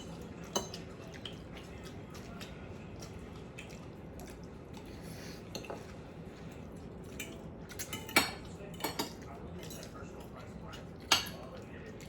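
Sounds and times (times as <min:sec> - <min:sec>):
wet chewing of food: 0:00.0 - 0:12.0
utensils clicking against dishes: 0:07.2 - 0:10.0.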